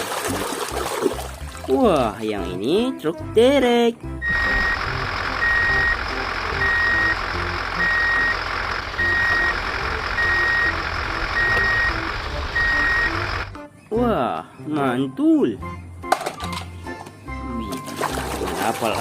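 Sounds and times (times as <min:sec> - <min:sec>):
truck engine running: 0:04.2 - 0:13.6
truck reversing alarm beeping: 0:04.2 - 0:13.6.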